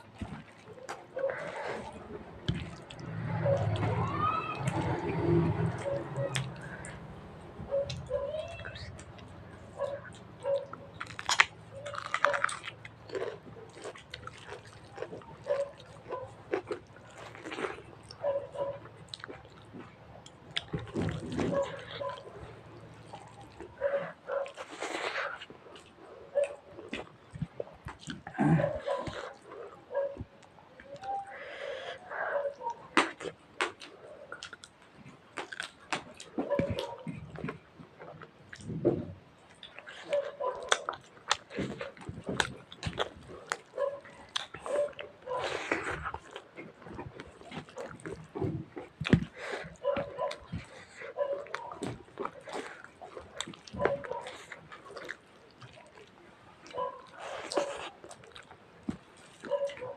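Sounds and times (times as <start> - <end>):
chewing and crunching food: 0.0 - 59.9.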